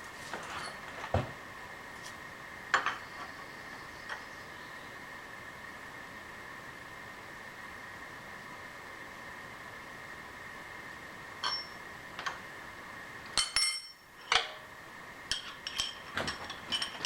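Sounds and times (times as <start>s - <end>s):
metal parts clinking: 13.4s - 14.6s.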